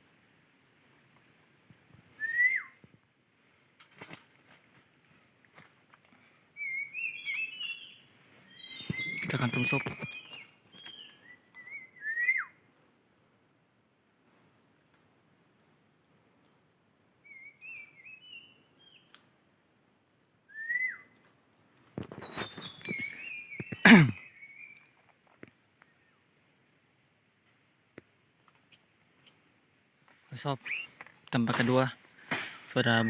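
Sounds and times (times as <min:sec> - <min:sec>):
high insect drone: 0:00.0 - 0:33.0
birds chirping: 0:06.4 - 0:12.4, 0:21.7 - 0:25.0, 0:30.3 - 0:33.0.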